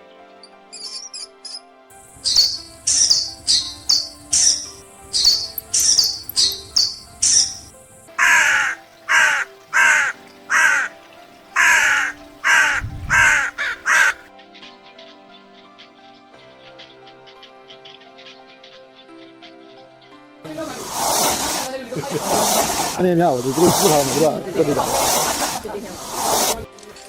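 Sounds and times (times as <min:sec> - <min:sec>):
background music with held notes: 0:00.0 - 0:27.0
high bird calls sliding downward: 0:00.8 - 0:10.9, 0:11.6 - 0:14.3, 0:20.7 - 0:26.7
crow cawing: 0:08.2 - 0:20.0.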